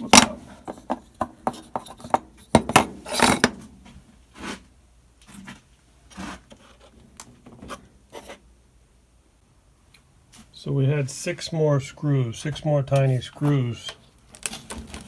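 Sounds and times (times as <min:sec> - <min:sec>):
short scrape: 0:04.3 - 0:04.7.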